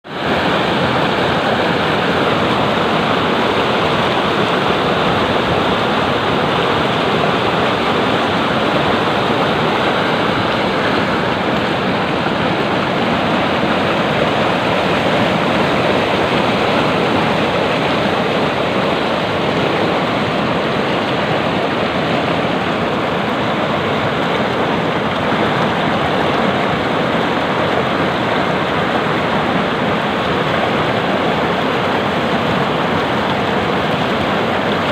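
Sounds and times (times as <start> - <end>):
water rushing over rocks: 0.0 - 34.9.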